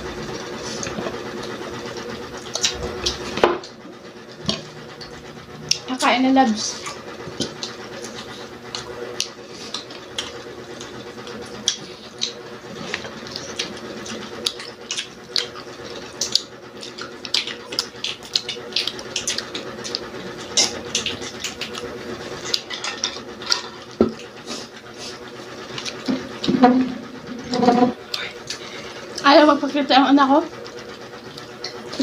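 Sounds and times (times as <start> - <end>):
person chewing crispy food: 6.8 - 26.5.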